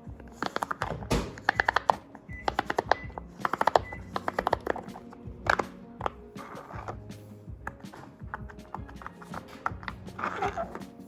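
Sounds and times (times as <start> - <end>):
soft background music: 0.0 - 11.0
pop-it toy bubbles popping: 0.3 - 7.0.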